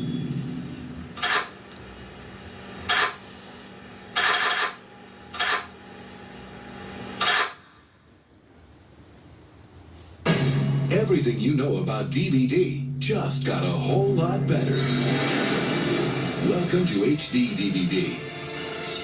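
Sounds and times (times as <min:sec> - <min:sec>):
faint low drone: 0:00.0 - 0:01.2, 0:10.3 - 0:18.4
sharp loud bangs: 0:10.3 - 0:13.5.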